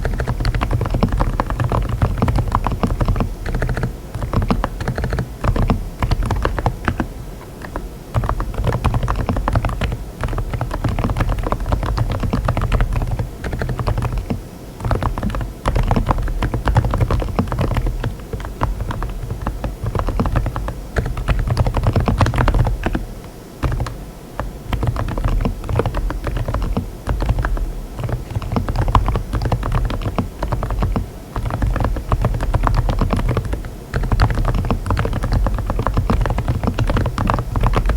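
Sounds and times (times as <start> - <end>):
typing on mechanical keyboard: 0.0 - 37.9.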